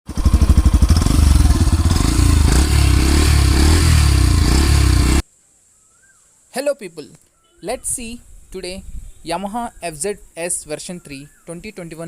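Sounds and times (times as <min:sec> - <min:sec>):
motorcycle engine running: 0:00.1 - 0:05.2.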